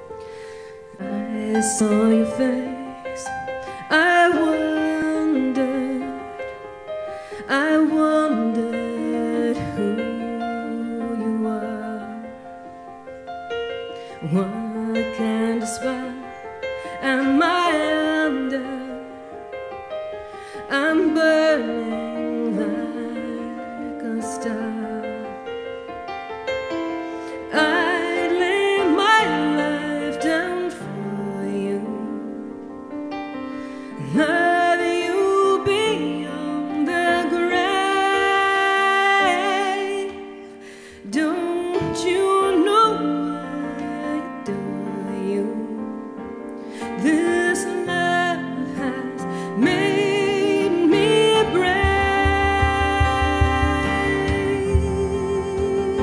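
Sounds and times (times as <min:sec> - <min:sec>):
woman singing: 0:00.0 - 0:12.8, 0:13.9 - 0:25.9, 0:26.6 - 0:32.8, 0:33.6 - 0:56.0
instrumental backing: 0:45.5 - 0:56.0
keyboard chords: 0:49.8 - 0:56.0.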